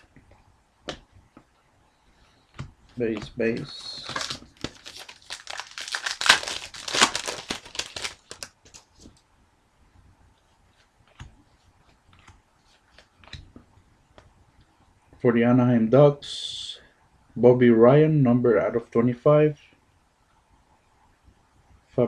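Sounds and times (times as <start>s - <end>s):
plastic wrapper crinkling: 3.5s - 9.1s.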